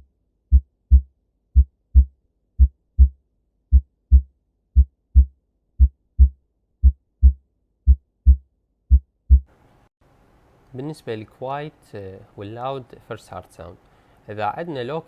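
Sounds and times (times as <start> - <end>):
heartbeat lub-dub: 0.5 - 9.5.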